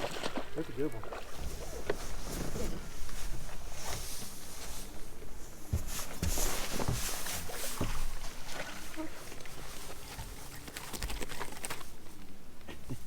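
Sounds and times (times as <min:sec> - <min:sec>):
water noise: 0:00.0 - 0:03.7
wind: 0:00.0 - 0:13.0
dull thumps on a boat: 0:05.6 - 0:09.2.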